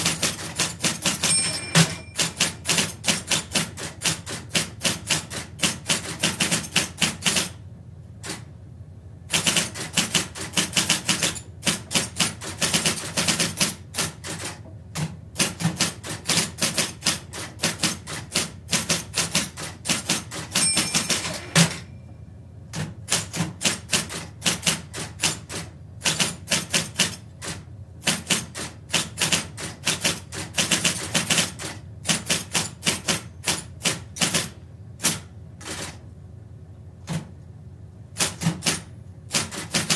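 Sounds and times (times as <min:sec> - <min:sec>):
electric typewriter typing: 0:00.0 - 0:07.6, 0:09.3 - 0:21.9, 0:22.7 - 0:36.0, 0:38.2 - 0:39.9
short high tone: 0:01.3 - 0:02.2.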